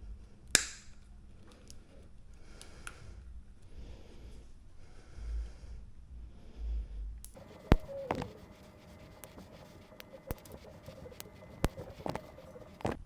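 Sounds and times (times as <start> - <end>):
handling noise: 7.4 - 13.0.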